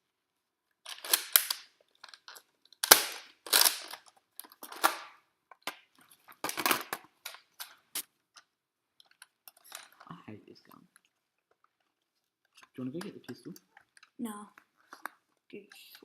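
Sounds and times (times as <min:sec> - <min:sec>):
toy blaster clacking: 0:00.9 - 0:01.7, 0:02.8 - 0:04.0.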